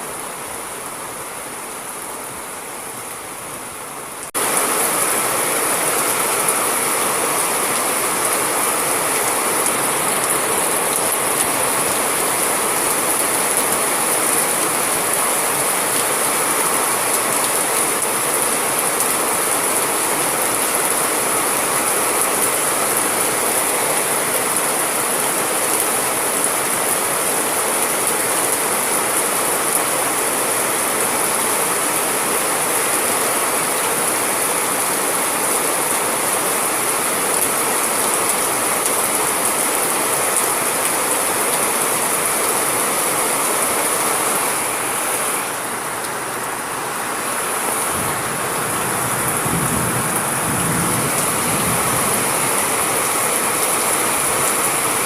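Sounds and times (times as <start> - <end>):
heavy rain: 0.0 - 55.0
distant thunder rumble: 47.9 - 52.6.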